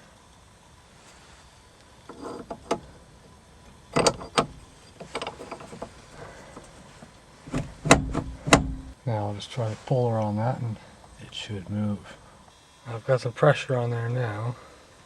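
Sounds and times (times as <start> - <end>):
metal tools clinking and knocking: 3.7 - 9.0.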